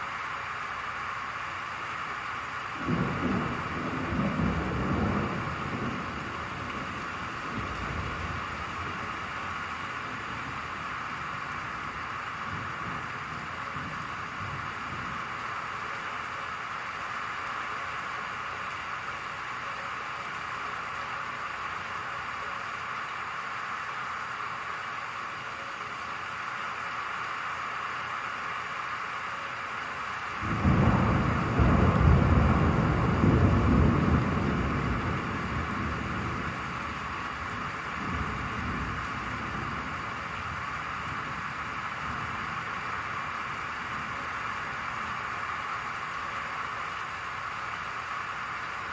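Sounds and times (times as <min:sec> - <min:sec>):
rain falling: 0:00.0 - 0:48.9
thunder rumbling: 0:02.7 - 0:16.8, 0:30.4 - 0:46.4.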